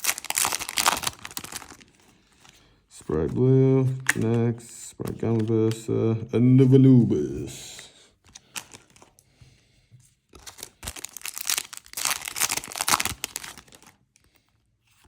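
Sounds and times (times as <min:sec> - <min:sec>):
foil pack tearing and crinkling: 0:00.0 - 0:01.9, 0:10.4 - 0:14.0.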